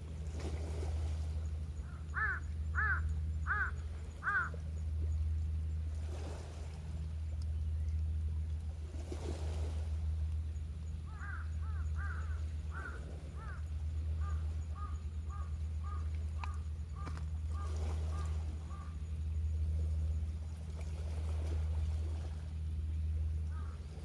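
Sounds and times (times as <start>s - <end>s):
steady low rumble: 0.0s - 24.0s
crow cawing: 2.2s - 4.6s, 11.1s - 18.9s, 23.5s - 23.8s.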